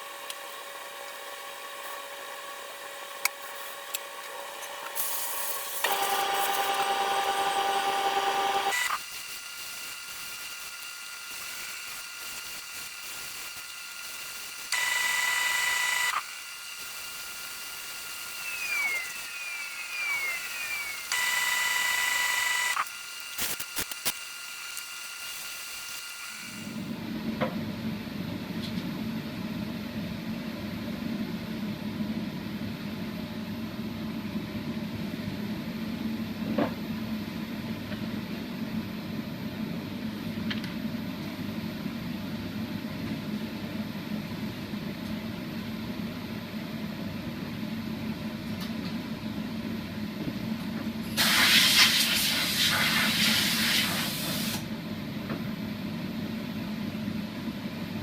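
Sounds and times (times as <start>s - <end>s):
spray gun hissing: 51.2s - 54.6s.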